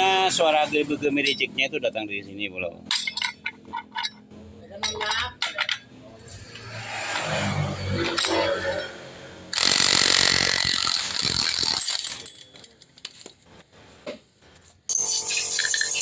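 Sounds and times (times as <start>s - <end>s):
air tool burst: 9.5s - 12.2s.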